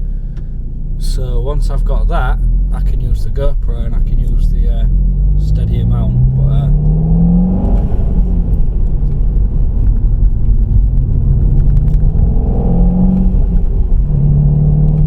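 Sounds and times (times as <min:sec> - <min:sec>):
car engine revving: 0:00.0 - 0:15.0
road rumble: 0:00.0 - 0:15.0.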